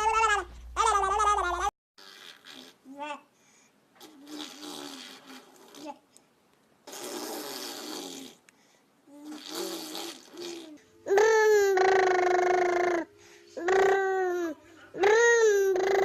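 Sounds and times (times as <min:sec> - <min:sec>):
baby babbling: 0:00.0 - 0:01.7, 0:10.3 - 0:16.0
baby squealing: 0:00.0 - 0:02.5, 0:10.4 - 0:16.0.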